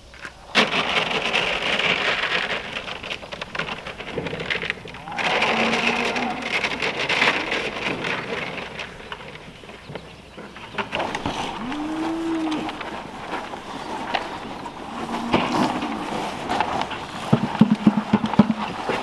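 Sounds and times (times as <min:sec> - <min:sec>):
cattle mooing: 0:05.0 - 0:07.8, 0:11.0 - 0:17.3.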